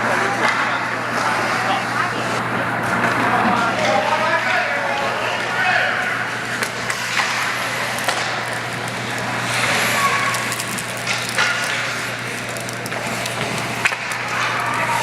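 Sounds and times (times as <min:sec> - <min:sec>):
skates scraping on ice: 0:06.2 - 0:15.0
hockey sticks and puck knocking: 0:06.5 - 0:15.0.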